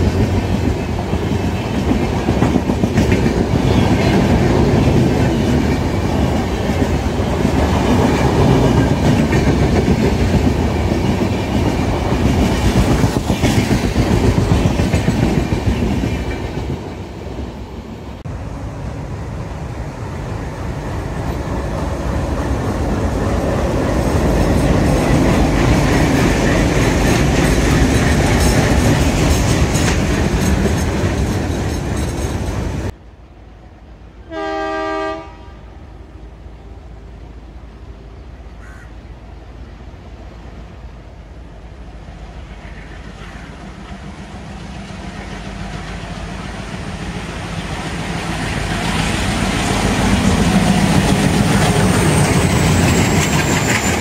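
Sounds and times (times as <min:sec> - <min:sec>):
train wheel clatter: 0:00.0 - 0:17.1, 0:21.2 - 0:33.0, 0:42.6 - 0:54.0
low train rumble: 0:00.0 - 0:54.0
locomotive horn: 0:34.2 - 0:35.8.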